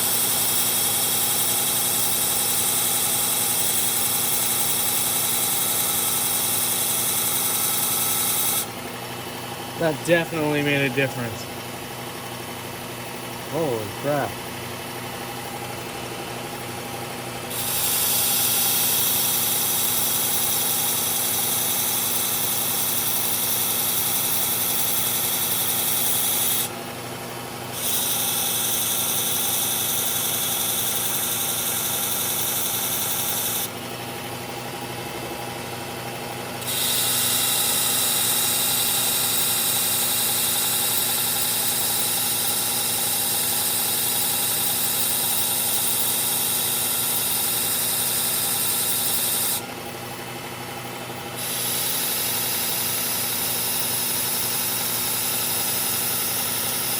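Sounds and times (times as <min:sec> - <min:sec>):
belt sharpener motor hum: 0:00.0 - 0:34.0, 0:35.7 - 0:56.9
knife grinding on abrasive belt: 0:17.5 - 0:26.7, 0:27.8 - 0:33.7, 0:36.6 - 0:50.2, 0:50.8 - 0:56.9.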